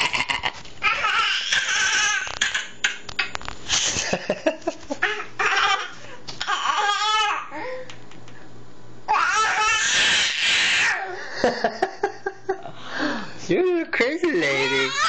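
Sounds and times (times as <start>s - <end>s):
baby shrieking and squealing: 0.8s - 3.0s, 5.0s - 7.6s, 9.1s - 11.1s, 14.4s - 15.0s
baby laughing and babbling: 5.0s - 7.8s.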